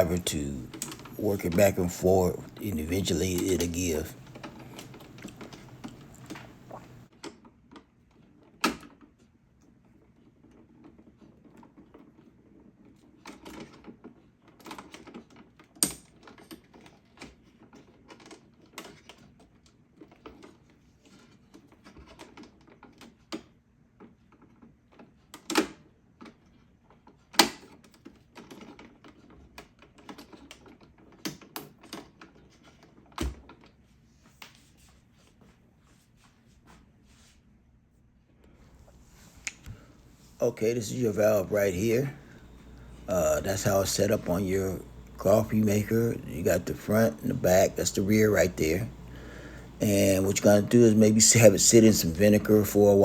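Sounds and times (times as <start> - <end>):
plastic parts clicking and knocking: 13.2 - 33.8.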